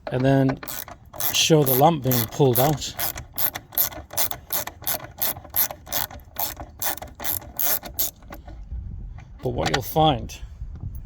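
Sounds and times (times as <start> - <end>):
ratchet driver clicking: 0.2 - 8.4.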